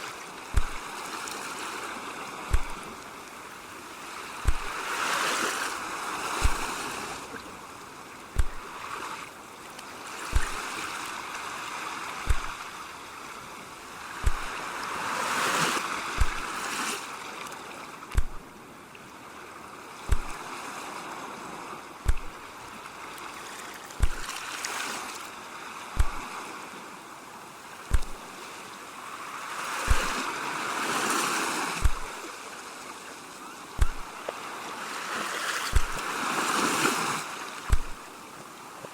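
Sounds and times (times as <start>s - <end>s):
ocean waves washing in: 0.0s - 38.9s
low thump: 0.5s - 0.8s, 2.5s - 2.8s, 4.4s - 4.8s, 6.4s - 6.7s, 8.4s - 8.6s, 10.3s - 10.6s, 12.3s - 12.6s, 14.2s - 14.5s, 16.2s - 16.5s, 18.1s - 18.4s, 20.1s - 20.4s, 22.1s - 22.4s, 24.0s - 24.3s, 26.0s - 26.2s, 27.9s - 28.2s, 29.9s - 30.2s, 31.8s - 32.1s, 33.8s - 34.1s, 35.7s - 36.0s, 37.7s - 38.0s.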